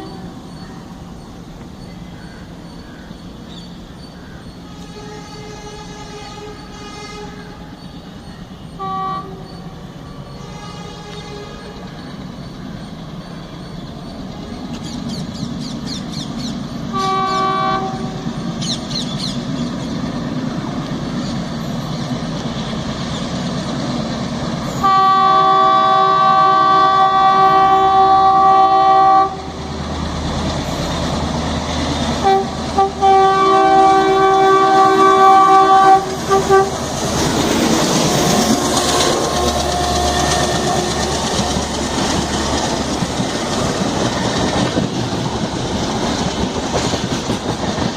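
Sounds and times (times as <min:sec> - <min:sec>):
coach wheels passing: 0:00.0 - 0:47.9
train rumbling: 0:00.0 - 0:47.9
locomotive horn blasts: 0:04.7 - 0:07.8, 0:08.6 - 0:09.6, 0:10.3 - 0:12.0, 0:16.9 - 0:18.3, 0:24.7 - 0:29.6, 0:32.2 - 0:42.1.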